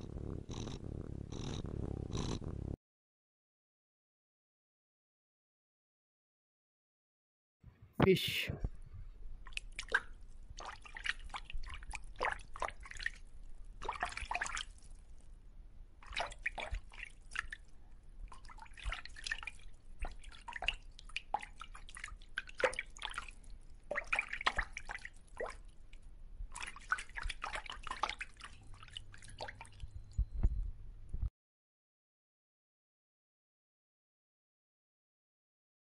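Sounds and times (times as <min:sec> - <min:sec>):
water dripping and splashing: 0:09.4 - 0:15.3, 0:16.0 - 0:29.9.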